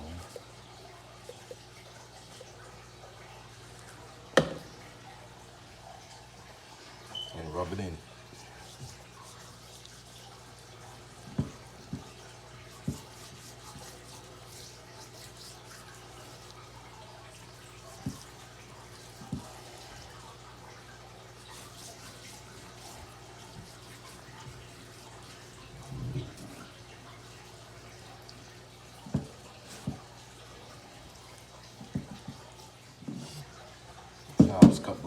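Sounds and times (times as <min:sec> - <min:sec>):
hands rubbing meat: 0:07.2 - 0:33.6.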